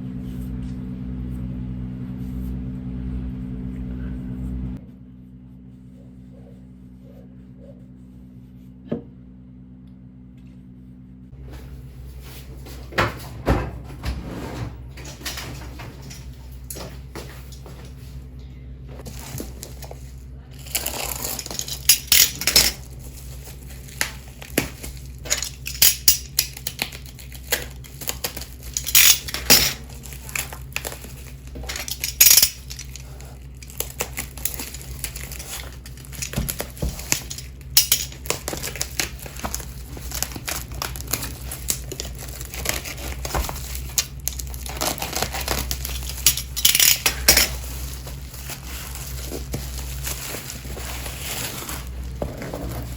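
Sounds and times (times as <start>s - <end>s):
packaging crinkling and rustling: 19.0s - 52.9s.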